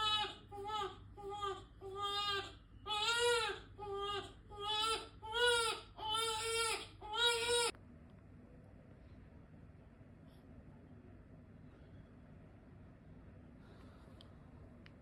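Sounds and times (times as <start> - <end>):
infant crying: 0.0 - 7.7.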